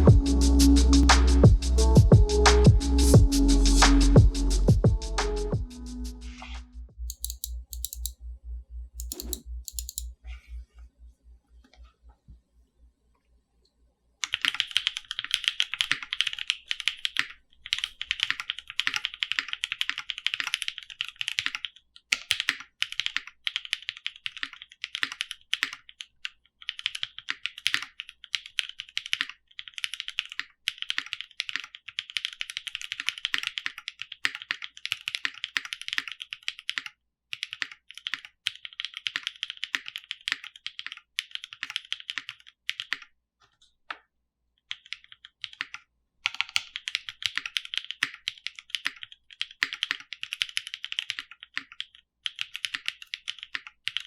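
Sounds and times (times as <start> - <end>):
typing on mechanical keyboard: 7.1 - 8.1, 9.0 - 10.1, 14.2 - 43.1, 44.7 - 54.0.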